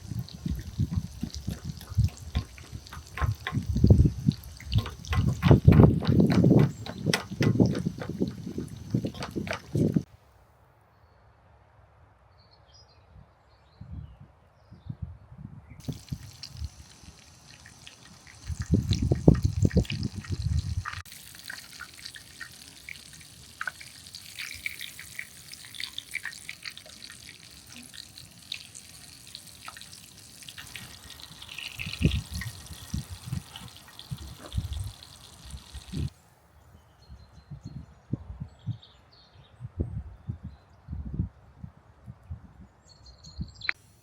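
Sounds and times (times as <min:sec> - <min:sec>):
food sizzling in hot oil: 0:00.0 - 0:10.1, 0:15.8 - 0:36.1
low thuds: 0:00.1 - 0:10.1.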